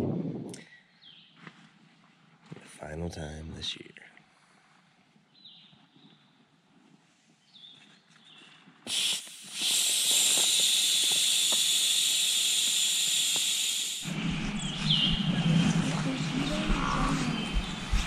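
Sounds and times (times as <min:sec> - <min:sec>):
loud steady hiss: 0:08.9 - 0:14.7.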